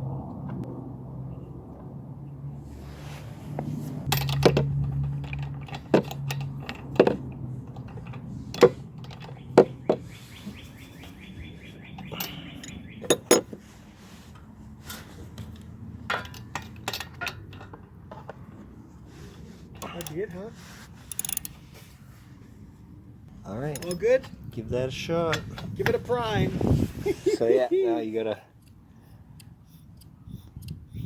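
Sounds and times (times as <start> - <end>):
metal hand tools clinking: 4.1 - 9.4, 12.0 - 13.5, 19.8 - 20.2, 23.6 - 24.3
socket ratchet clicking: 21.1 - 21.5.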